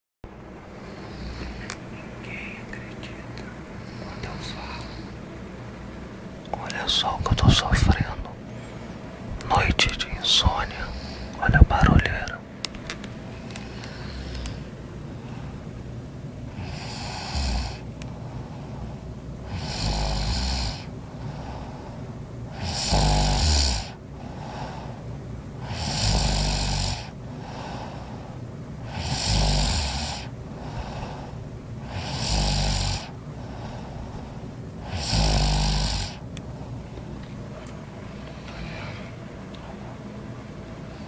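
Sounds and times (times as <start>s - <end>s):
woman snoring: 0.8s - 1.8s, 16.5s - 17.9s, 19.5s - 21.8s, 22.5s - 24.8s, 25.6s - 28.1s, 28.8s - 34.2s, 34.8s - 36.2s.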